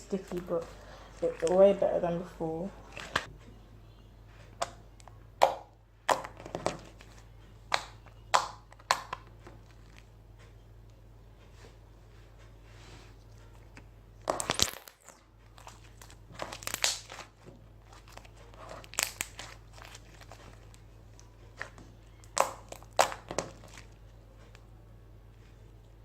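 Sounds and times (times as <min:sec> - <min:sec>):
slime squelching and crackling: 0:00.1 - 0:03.3, 0:13.6 - 0:24.0.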